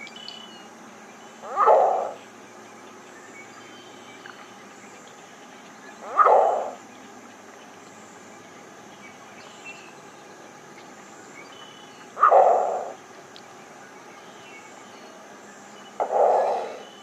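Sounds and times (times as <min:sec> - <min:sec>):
faint outdoor background noise: 0:00.0 - 0:17.0
heron harsh call: 0:01.4 - 0:02.2, 0:06.0 - 0:06.8, 0:12.2 - 0:13.0, 0:16.0 - 0:17.0.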